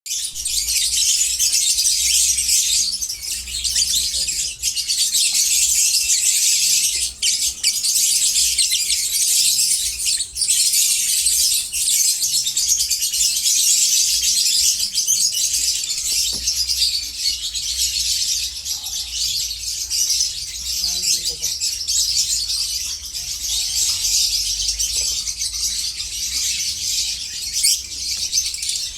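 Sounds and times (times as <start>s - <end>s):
lovebirds chattering and screeching: 0.1s - 28.9s.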